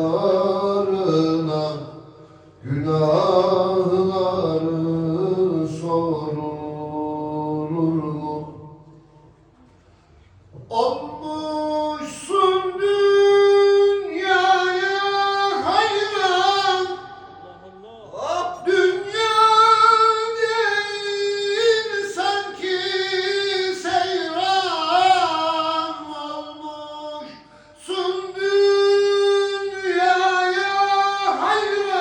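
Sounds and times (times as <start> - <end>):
high voice singing devotional hymn: 2.6 - 8.5, 10.6 - 32.0.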